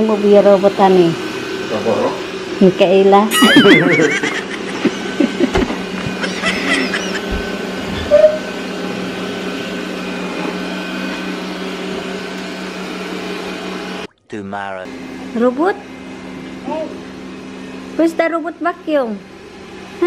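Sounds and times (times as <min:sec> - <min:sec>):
robot vacuum motor hum: 0:00.0 - 0:14.1.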